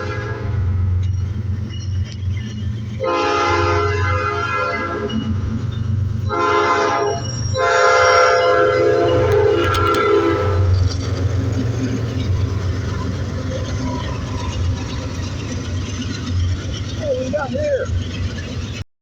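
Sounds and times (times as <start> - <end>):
locomotive horn blasts: 0.0 - 0.9, 3.0 - 5.4, 6.2 - 10.8
low engine rumble: 0.0 - 18.9.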